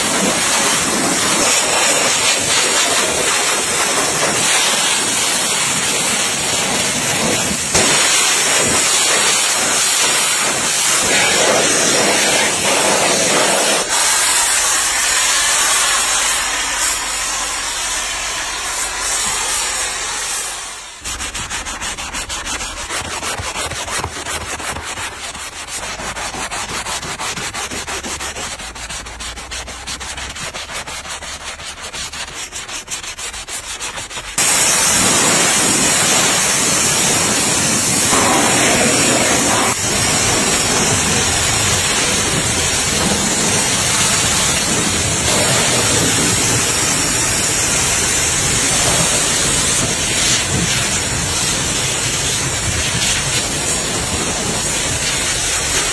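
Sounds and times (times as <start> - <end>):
sanding car bodywork: 0.0 - 55.9
steady hiss: 34.4 - 55.9.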